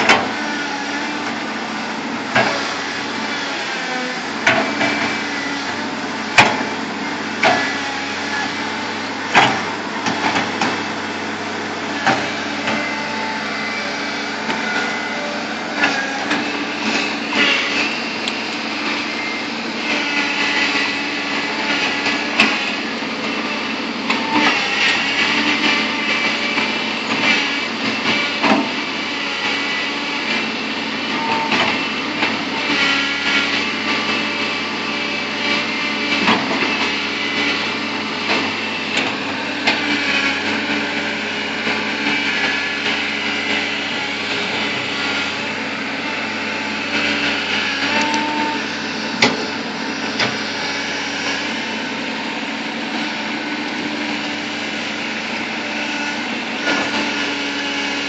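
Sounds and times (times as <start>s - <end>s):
bulldozer diesel engine running: 0.0s - 58.0s.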